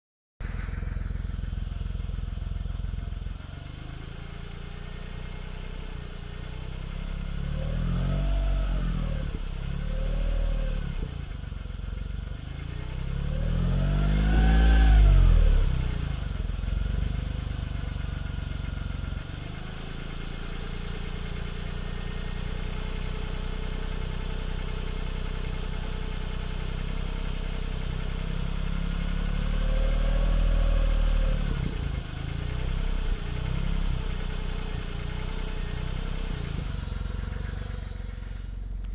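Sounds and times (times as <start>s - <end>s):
car engine idling and revving: 0.4s - 38.9s.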